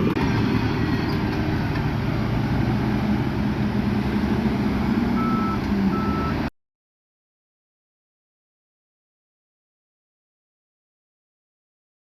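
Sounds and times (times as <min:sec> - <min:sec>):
heavy diesel machinery rumbling: 0:00.0 - 0:06.5
reversing alarm beeping: 0:05.2 - 0:06.4.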